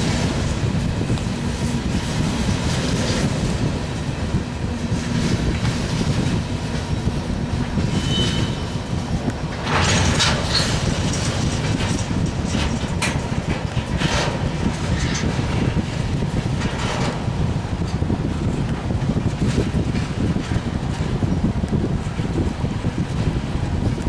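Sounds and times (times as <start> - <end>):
freight train rumbling past: 0.0 - 24.0
wheels clacking over rail joints: 0.0 - 24.0
high wheel squeal: 7.8 - 9.0.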